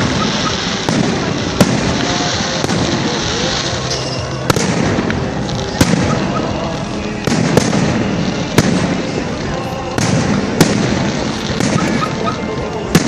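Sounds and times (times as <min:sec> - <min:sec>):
crowd chatter: 0:00.0 - 0:13.0
fireworks shells bursting: 0:00.0 - 0:13.0.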